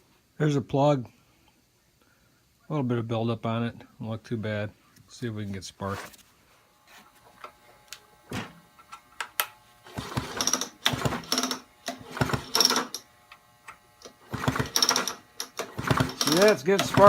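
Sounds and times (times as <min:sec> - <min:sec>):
chainsaw starter rope pulls: 0:09.8 - 0:13.0, 0:14.0 - 0:17.0
engine turning over: 0:09.9 - 0:13.0, 0:14.2 - 0:17.0.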